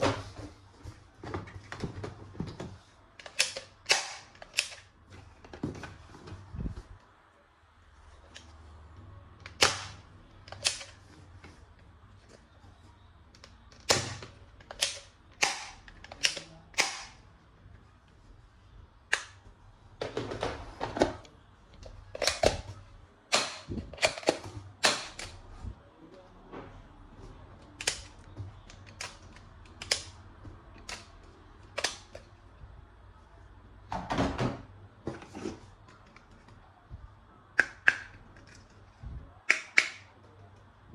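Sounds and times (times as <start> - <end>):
plastic toy gun clicks: 3.2 - 4.9, 9.5 - 11.0, 13.8 - 17.2, 28.9 - 30.1, 31.7 - 32.2.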